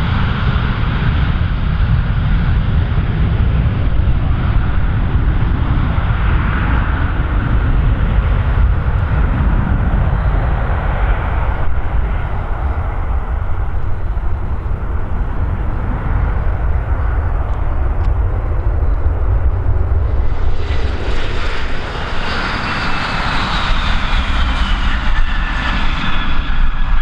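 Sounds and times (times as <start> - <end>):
airliner engines rumbling: 0.0 - 27.0.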